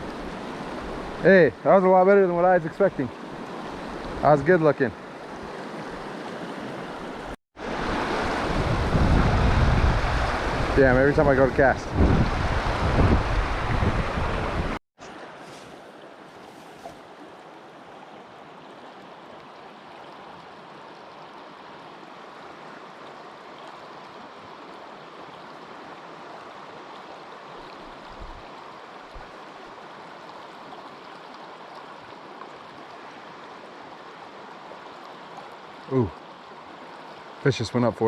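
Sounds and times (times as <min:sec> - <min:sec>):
creek water rushing: 0:00.0 - 0:38.0.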